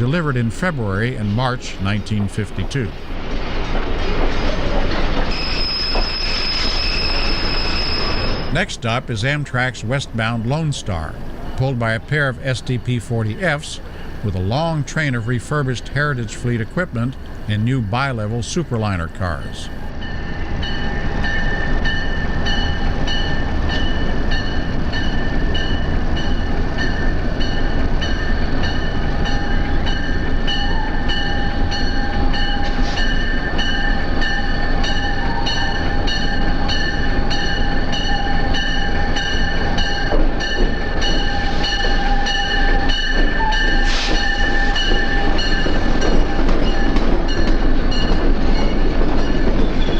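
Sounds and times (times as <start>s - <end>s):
train rumble: 0.0s - 49.9s
train wheels clicking over rail joints: 3.1s - 8.6s, 21.4s - 49.9s.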